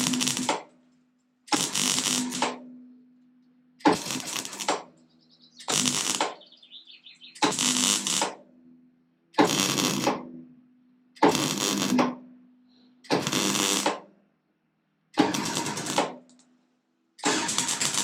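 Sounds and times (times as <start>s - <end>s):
welder low hum: 0.0s - 0.6s, 1.5s - 3.0s, 5.6s - 6.4s, 7.4s - 8.4s, 13.2s - 14.0s, 15.3s - 16.5s
welder crackling: 0.0s - 0.8s, 1.5s - 2.6s, 3.8s - 5.0s, 5.6s - 6.4s, 7.2s - 8.4s, 9.4s - 10.2s, 11.2s - 12.1s, 13.1s - 14.1s, 15.2s - 16.5s, 17.2s - 18.0s.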